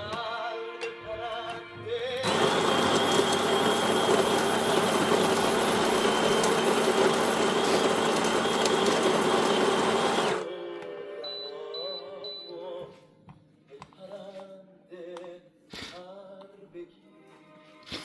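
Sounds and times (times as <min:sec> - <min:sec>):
espresso machine hissing: 0:02.2 - 0:10.5.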